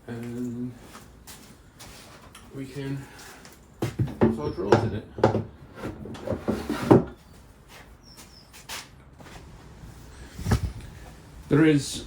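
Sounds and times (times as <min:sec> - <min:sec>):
plastic drawers scraping: 0:05.4 - 0:07.2.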